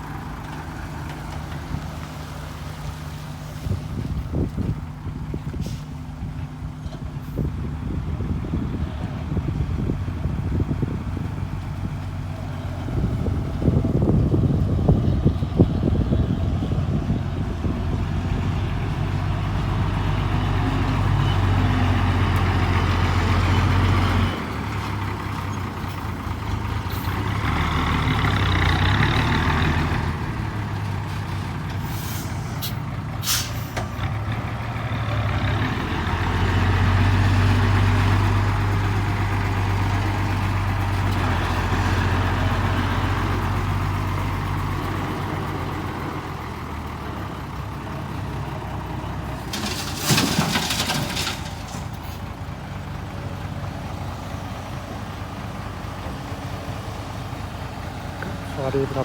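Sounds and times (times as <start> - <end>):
diesel truck engine droning: 0.0 - 59.0
sharp air hisses: 31.9 - 33.8.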